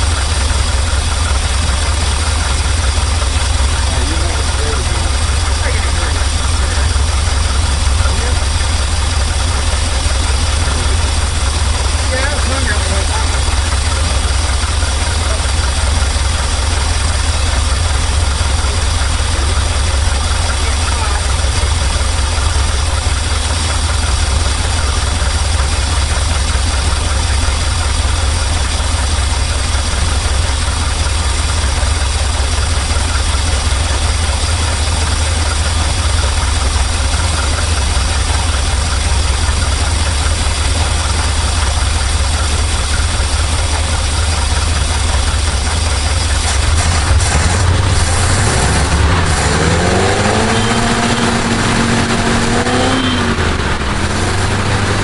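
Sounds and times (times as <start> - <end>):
truck engine idling: 0.0 - 55.0.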